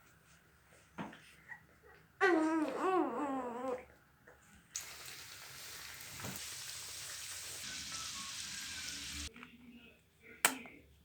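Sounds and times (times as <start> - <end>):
pastries sizzling in oil: 4.8 - 9.3.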